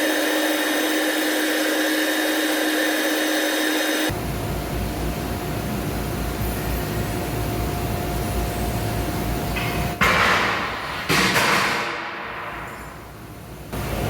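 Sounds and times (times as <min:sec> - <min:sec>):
laser cutting machine humming: 0:00.0 - 0:06.3.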